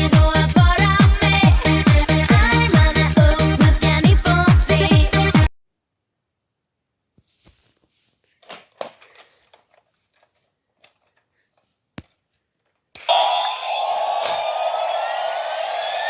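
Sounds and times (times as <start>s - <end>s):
toy electronic drone rising tone: 13.0s - 16.0s.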